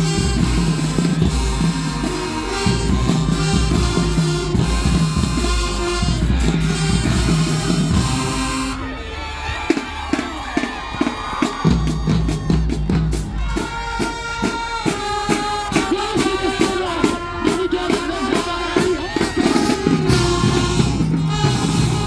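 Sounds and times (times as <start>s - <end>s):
heavy bass drum: 0.0s - 8.8s, 18.8s - 22.0s
steady drum beat: 0.0s - 8.8s, 9.6s - 22.0s
brass playing melody: 0.0s - 9.3s, 13.3s - 22.0s.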